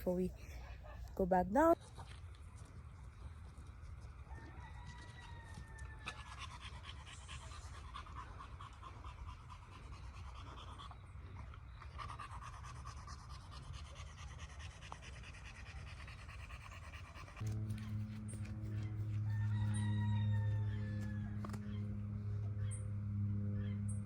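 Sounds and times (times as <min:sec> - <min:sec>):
steady low rumble: 0:16.5 - 0:24.0.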